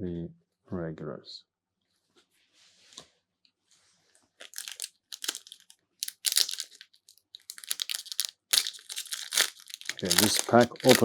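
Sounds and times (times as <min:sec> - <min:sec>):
wrapper crinkling and tearing: 0:04.4 - 0:11.0.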